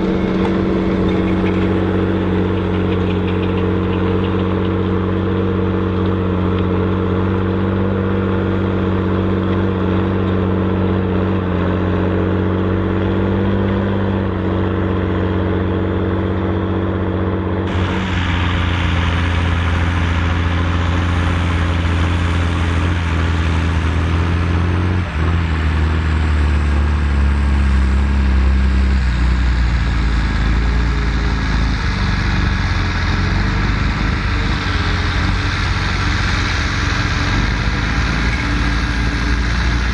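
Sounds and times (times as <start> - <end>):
tractor diesel engine under load: 0.0 - 39.9
hiss: 17.7 - 23.7, 30.8 - 39.9.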